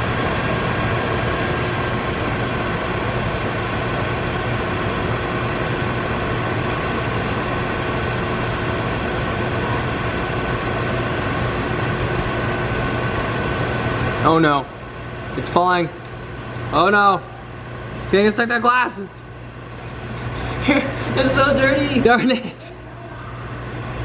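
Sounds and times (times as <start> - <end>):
constant tones: 0.0 - 9.0
microwave oven humming: 0.0 - 24.0.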